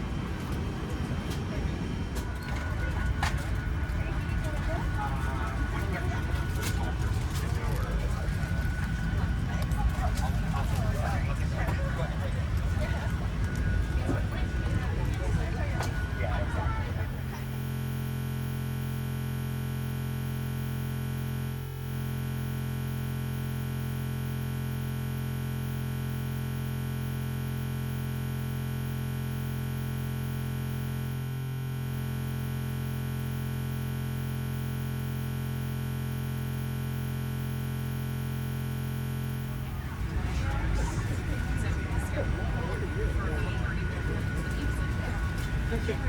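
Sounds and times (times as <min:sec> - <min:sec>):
ambient synthesizer chord: 0:16.0 - 0:46.0.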